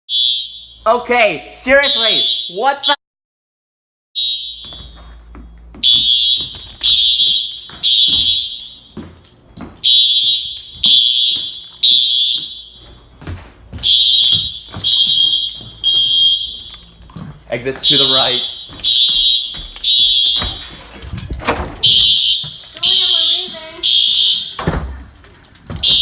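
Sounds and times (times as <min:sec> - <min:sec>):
fire alarm beeping: 0:00.1 - 0:03.0, 0:04.2 - 0:24.9, 0:25.6 - 0:26.0.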